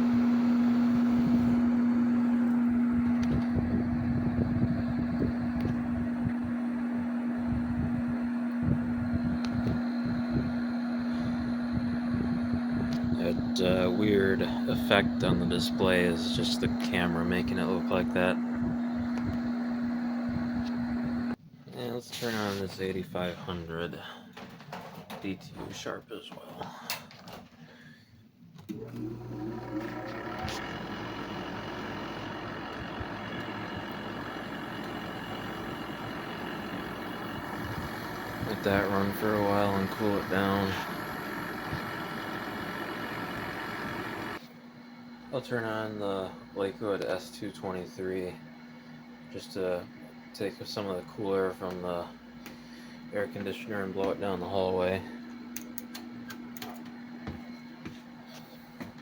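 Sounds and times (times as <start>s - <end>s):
air conditioner humming: 0.0s - 59.0s
air conditioner click: 55.4s - 57.0s.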